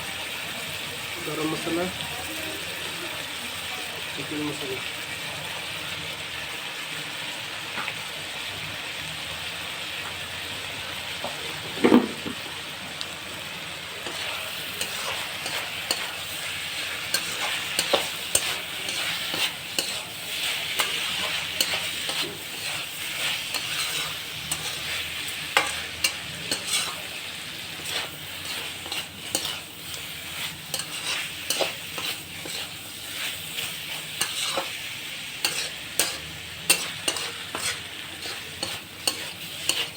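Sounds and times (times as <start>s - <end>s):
curry sizzling in a pan: 0.0s - 39.9s
spatula scraping a pan: 14.0s - 39.9s.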